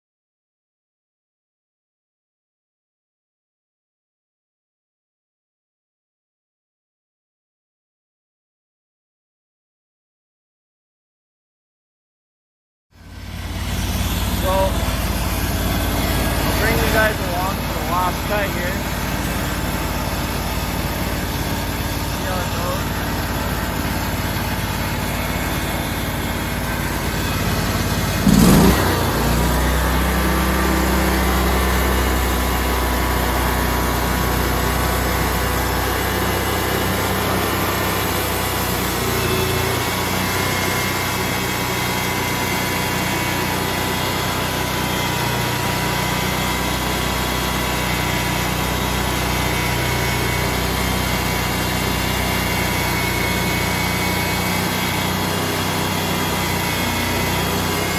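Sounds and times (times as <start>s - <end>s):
saw blade high whine: 13.0s - 57.9s
sawmill engine running: 13.0s - 57.9s.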